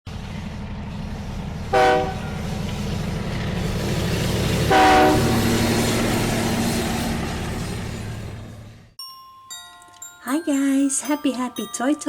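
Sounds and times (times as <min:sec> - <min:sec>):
train running rumble: 0:00.1 - 0:09.0
train horn blasts: 0:01.7 - 0:02.4, 0:04.7 - 0:05.4.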